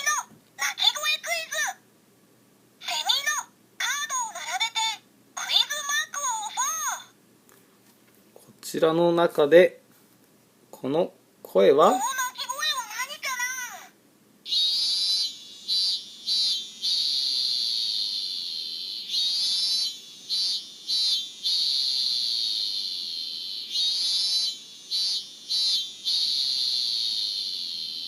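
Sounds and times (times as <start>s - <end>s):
cicada song through toy speaker: 0.0s - 1.6s, 2.8s - 7.0s, 14.5s - 28.0s.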